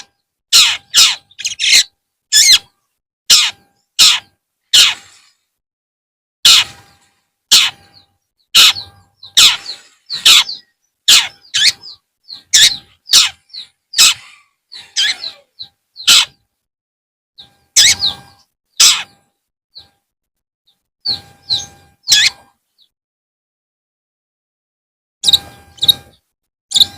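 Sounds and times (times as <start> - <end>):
soft bird chirps: 0.0 - 5.5, 6.5 - 16.5, 17.4 - 20.0, 20.7 - 22.9, 25.2 - 26.9
shrike calling: 0.6 - 2.7, 3.3 - 5.3, 6.4 - 16.4, 17.4 - 19.2, 21.0 - 22.5.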